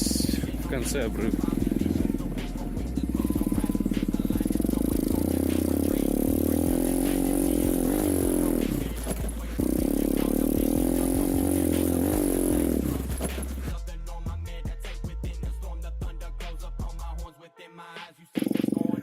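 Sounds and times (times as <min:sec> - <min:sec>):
motorcycle engine running: 0:00.0 - 0:13.8.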